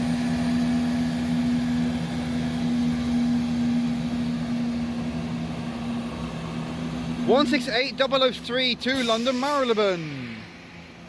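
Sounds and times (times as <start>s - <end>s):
diesel train engine drone: 0.0s - 11.0s.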